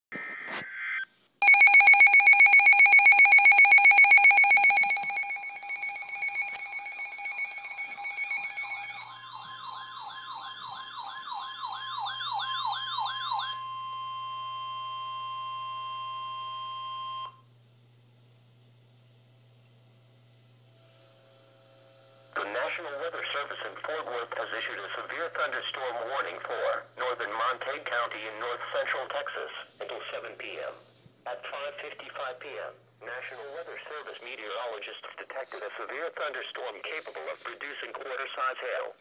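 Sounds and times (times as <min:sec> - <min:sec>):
steady alert tone: 0:01.4 - 0:09.2
pulsing buzzer alarm tone: 0:01.4 - 0:17.4
fast warbling siren: 0:03.4 - 0:17.3.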